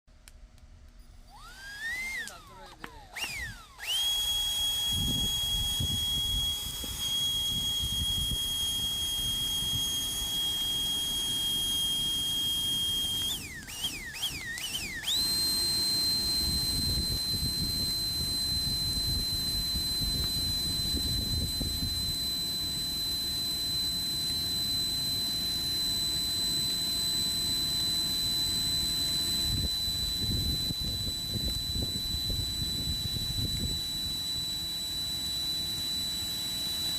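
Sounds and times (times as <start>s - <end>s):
electric blower whining: 0.8s - 36.9s.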